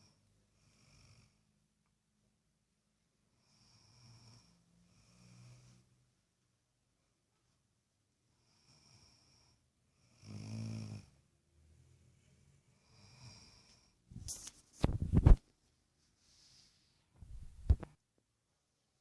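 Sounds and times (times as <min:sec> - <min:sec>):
snoring: 0:00.0 - 0:01.4, 0:03.4 - 0:05.9, 0:08.4 - 0:11.2, 0:12.8 - 0:13.9.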